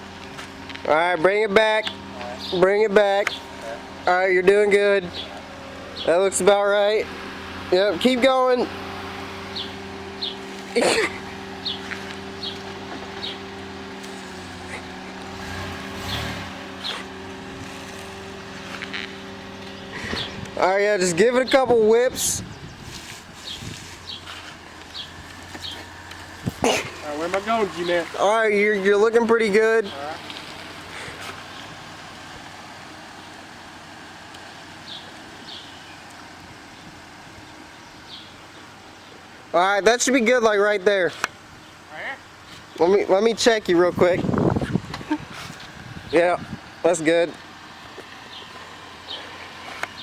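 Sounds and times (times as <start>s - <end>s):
pickup engine idling: 0.0s - 50.0s
bird chirping: 1.3s - 8.4s, 9.2s - 17.5s, 18.1s - 30.4s, 31.0s - 39.3s, 46.9s - 50.0s.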